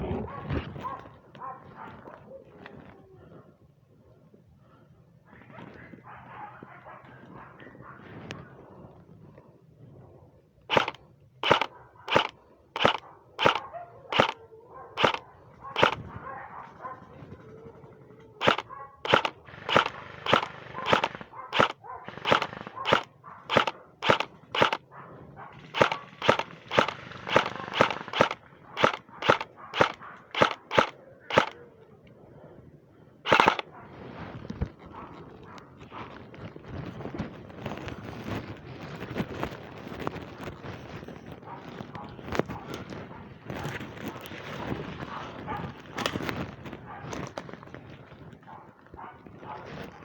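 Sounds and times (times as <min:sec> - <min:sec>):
airsoft gun firing single shots: 0:10.7 - 0:14.4, 0:15.0 - 0:15.2, 0:15.8 - 0:16.0, 0:18.4 - 0:24.8, 0:25.6 - 0:31.6, 0:33.3 - 0:33.7.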